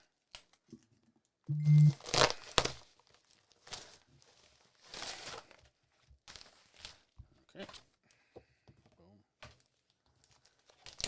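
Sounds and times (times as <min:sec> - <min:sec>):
plastic packaging crinkling and tearing: 0:02.0 - 0:07.1, 0:09.6 - 0:11.0.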